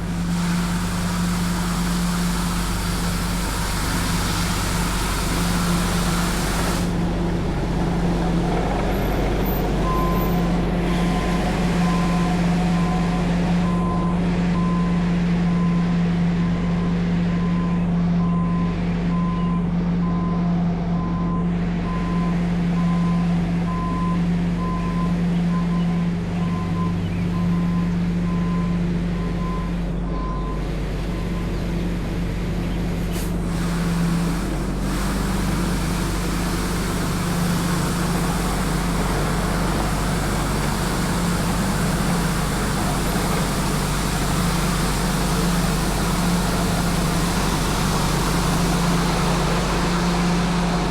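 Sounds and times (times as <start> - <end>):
steady hiss: 0.0 - 7.2, 30.7 - 50.9
street sweeper engine humming: 0.0 - 50.9.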